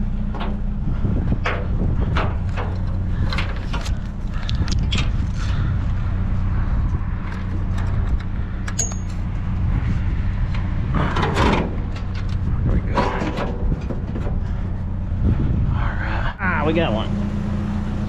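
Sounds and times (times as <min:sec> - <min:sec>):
vehicle engine idling: 0:00.0 - 0:18.0.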